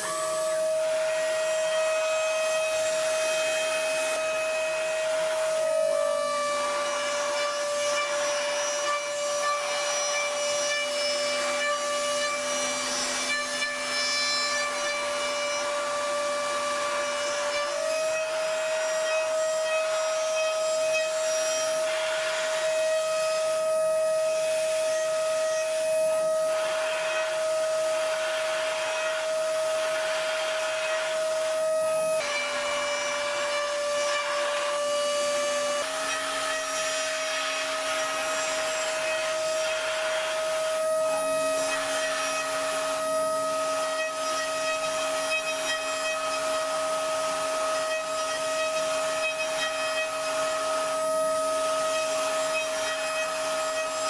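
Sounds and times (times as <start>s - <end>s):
milling machine spindle whine: 0.0s - 54.0s.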